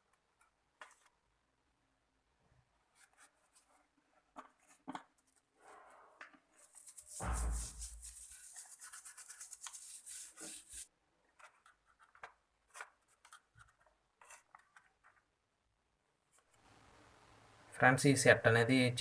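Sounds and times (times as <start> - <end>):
rapid scratching and rubbing: 6.6 - 10.9.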